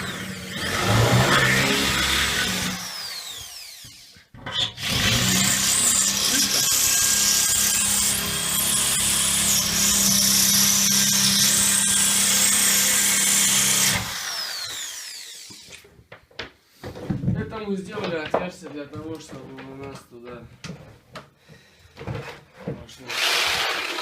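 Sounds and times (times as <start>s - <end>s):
power tool cutting: 0.0s - 15.8s, 23.1s - 24.0s.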